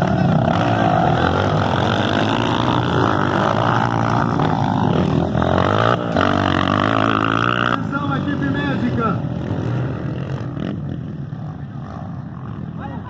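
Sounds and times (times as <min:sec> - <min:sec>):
motocross bikes revving: 0:00.0 - 0:13.0.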